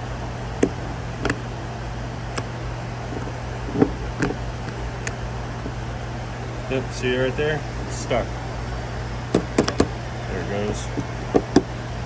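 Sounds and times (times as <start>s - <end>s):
steady low hum: 0.0s - 12.0s
valve plunger clicking: 0.6s - 1.5s, 2.3s - 5.8s, 9.2s - 10.0s.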